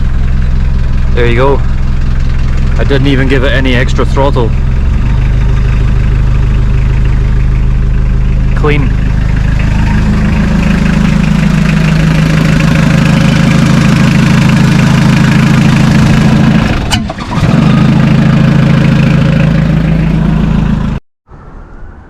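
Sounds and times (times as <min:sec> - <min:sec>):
diesel engine idling: 0:00.0 - 0:21.0.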